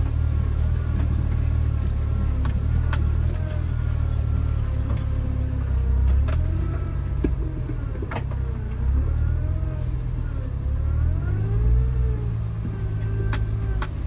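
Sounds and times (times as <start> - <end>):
car engine rumbling: 0.0 - 14.0.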